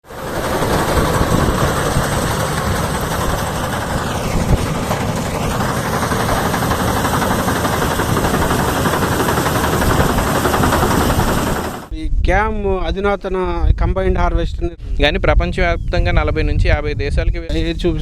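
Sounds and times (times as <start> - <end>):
combine harvester rumbling: 0.0 - 11.9, 17.5 - 18.0.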